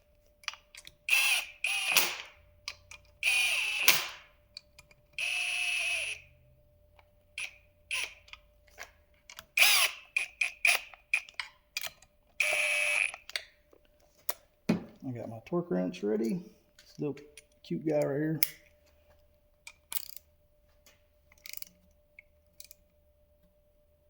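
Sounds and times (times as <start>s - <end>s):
ratchet tightening bolts: 21.3s - 21.8s.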